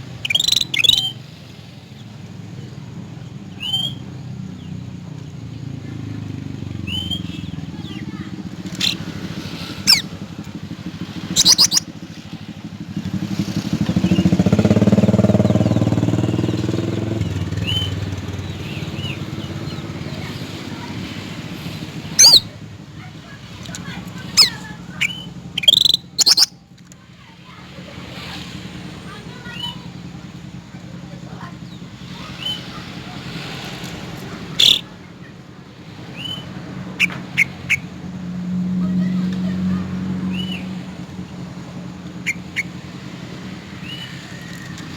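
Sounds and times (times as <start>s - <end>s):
loud bird call: 0.0s - 2.2s, 3.5s - 4.7s, 5.6s - 30.3s, 31.2s - 38.0s, 38.8s - 44.9s
vehicle engine passing by: 0.0s - 44.9s
faint bird chirps: 0.1s - 12.6s, 13.8s - 21.0s, 22.0s - 22.6s, 23.8s - 27.6s, 34.5s - 35.3s, 36.1s - 37.9s, 43.7s - 44.9s.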